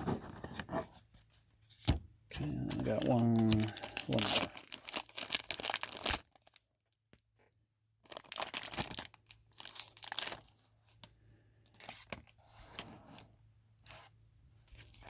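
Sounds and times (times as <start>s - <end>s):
wrapper and cards rustling: 2.4s - 6.2s
wrapper tearing: 2.6s - 6.6s, 8.1s - 10.4s.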